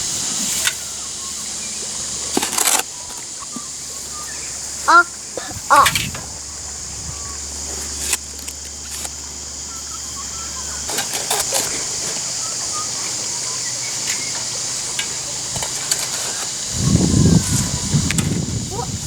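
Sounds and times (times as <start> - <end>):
concrete mixer turning with sand: 0.0 - 19.0
faint bird chirps: 2.9 - 7.5, 9.5 - 15.5.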